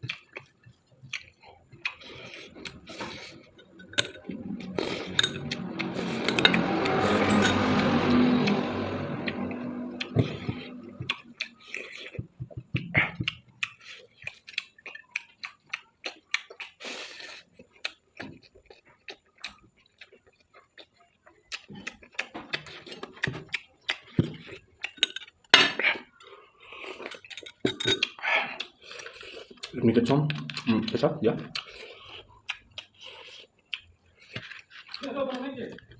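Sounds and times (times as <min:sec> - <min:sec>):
chewing: 0:00.0 - 0:07.7, 0:10.0 - 0:35.9
spoon clinking and scraping on plate: 0:02.9 - 0:07.8, 0:27.0 - 0:28.2.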